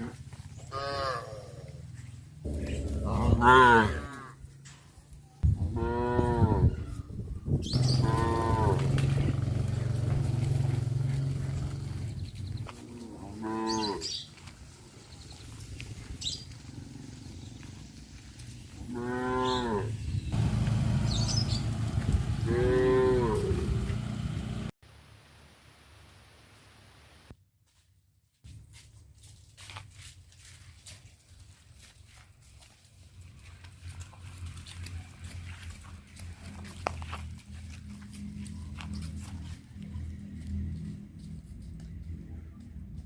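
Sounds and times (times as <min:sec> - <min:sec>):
cattle mooing: 0:00.0 - 0:01.8, 0:02.5 - 0:04.4, 0:05.7 - 0:06.7, 0:07.8 - 0:09.4, 0:12.8 - 0:14.1, 0:18.8 - 0:21.3, 0:22.3 - 0:24.2
low rumble: 0:20.0 - 0:24.7.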